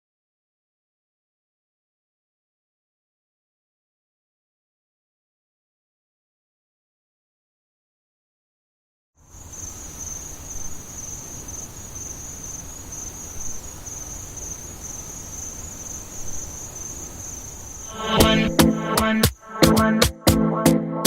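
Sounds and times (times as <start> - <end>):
crickets trilling: 9.2 - 19.6
loud music with sharp beat: 18.0 - 20.8.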